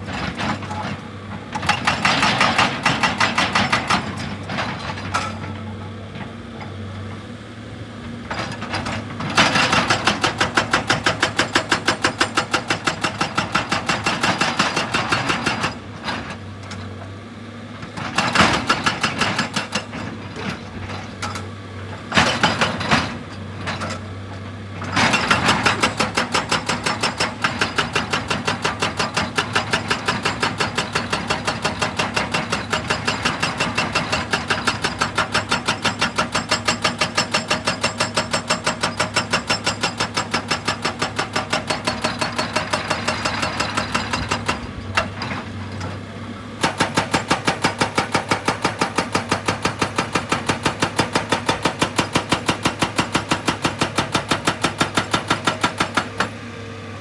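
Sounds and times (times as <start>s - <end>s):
machinery hammering into rock: 1.6s - 4.1s, 9.4s - 15.8s, 46.6s - 56.4s
diesel engine running: 48.5s - 57.0s.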